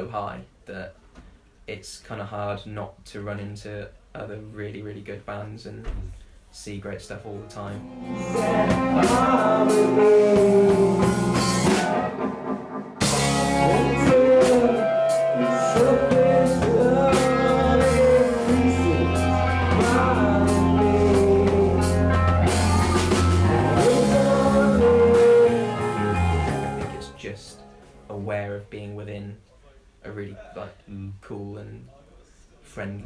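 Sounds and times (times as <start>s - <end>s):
person singing: 7.4s - 27.9s
electric guitar: 7.4s - 28.1s
drum kit: 7.6s - 28.1s.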